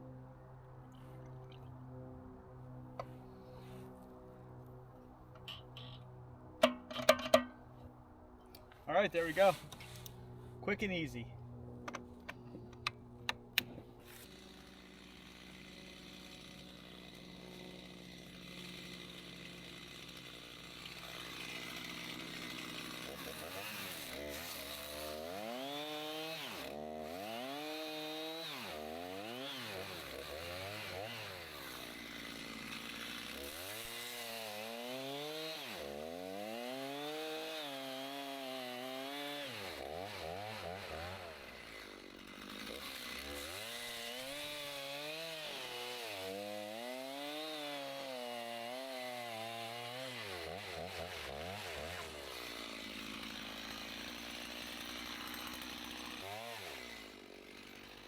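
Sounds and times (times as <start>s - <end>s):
chainsaw cutting logs: 11.9s - 58.0s.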